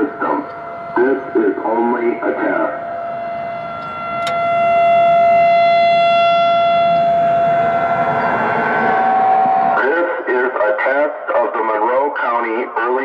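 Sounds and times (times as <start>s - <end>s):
electronic warning siren tone: 0.0s - 9.9s.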